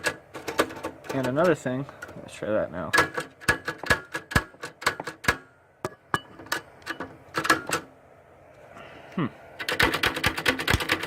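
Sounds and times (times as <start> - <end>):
manual typewriter clacking: 0.0 - 1.6, 2.9 - 5.4, 6.5 - 7.9, 9.6 - 11.0.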